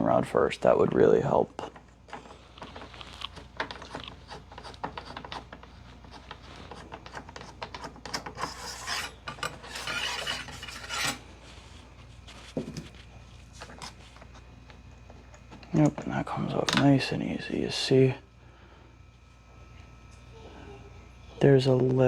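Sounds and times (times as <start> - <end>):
metal rod scraping on wood: 2.2 - 11.3.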